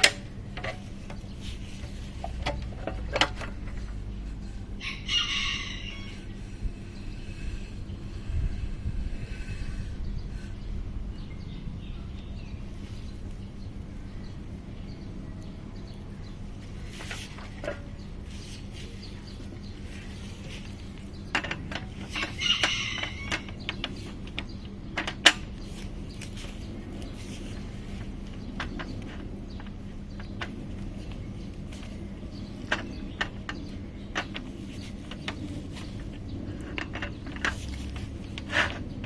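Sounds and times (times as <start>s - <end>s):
sharp clicks and knocks: 0.0s - 4.5s, 16.6s - 39.0s
bird chirp: 0.0s - 39.0s
steady low hum: 0.0s - 39.0s.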